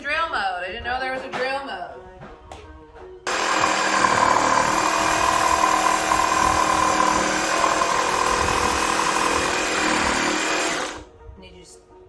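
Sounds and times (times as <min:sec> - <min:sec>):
power drill motor whine: 0:03.3 - 0:11.1.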